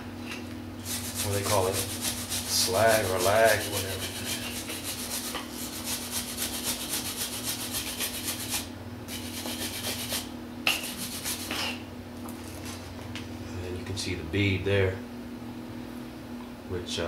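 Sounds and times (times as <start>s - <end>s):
wire brush scrubbing steel: 0.8s - 11.8s.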